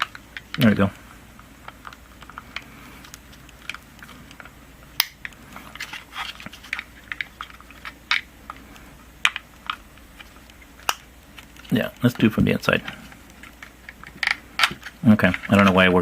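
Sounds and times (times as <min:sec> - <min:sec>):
sharp plastic snaps: 0:01.6 - 0:05.4.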